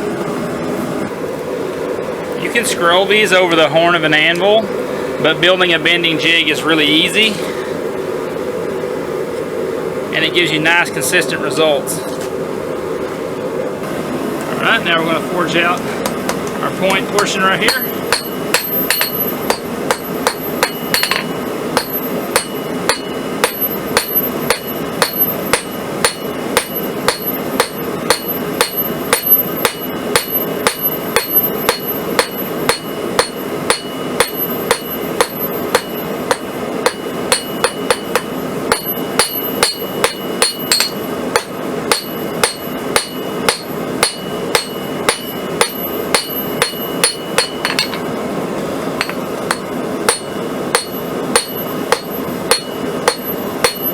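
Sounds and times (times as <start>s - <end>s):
hammer striking steel on anvil: 16.0s - 48.1s, 49.0s - 53.9s
anvil ringing: 16.9s - 48.1s, 49.0s - 53.9s.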